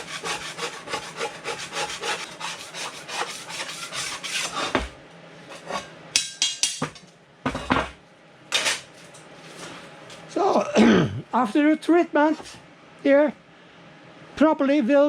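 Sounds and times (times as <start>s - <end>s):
hand scrubbing rust off steel: 0.0s - 4.9s.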